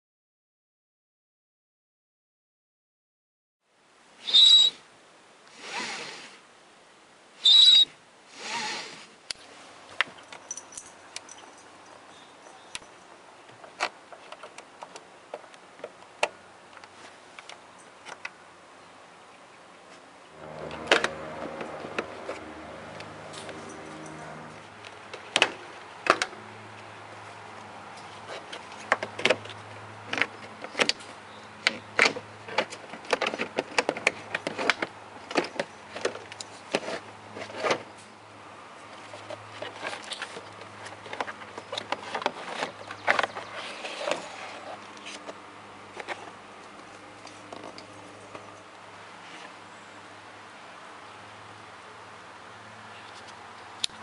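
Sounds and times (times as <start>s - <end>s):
low steady hum: 20.2s - 25.1s.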